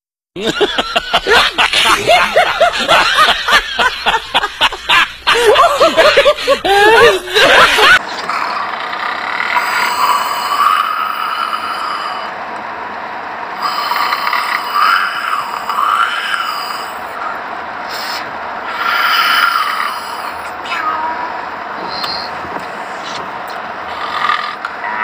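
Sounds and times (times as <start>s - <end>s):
person snoring with whistle: 8.4s - 12.3s, 13.6s - 20.6s, 21.9s - 22.4s.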